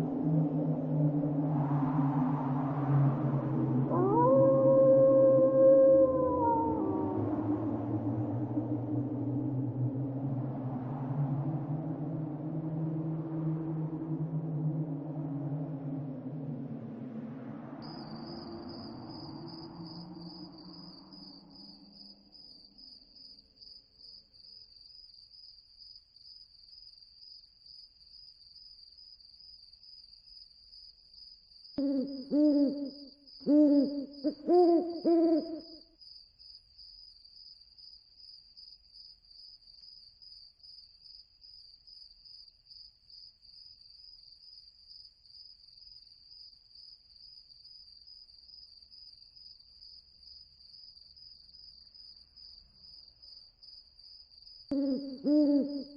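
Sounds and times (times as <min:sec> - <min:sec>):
crickets chirring: 0:00.0 - 0:55.9
owl hooting: 0:03.8 - 0:08.5, 0:31.8 - 0:35.8, 0:54.7 - 0:55.9.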